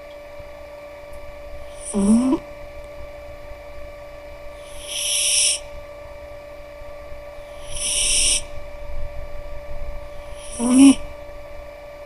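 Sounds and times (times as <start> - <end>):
cat snoring: 1.7 - 2.4, 4.6 - 5.7, 7.4 - 8.5, 10.1 - 11.1.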